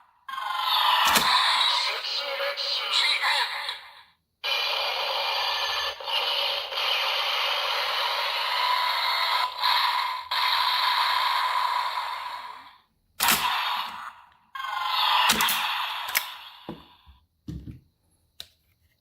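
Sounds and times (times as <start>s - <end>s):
toy electronic sound effect: 0.3s - 3.8s, 4.4s - 17.0s.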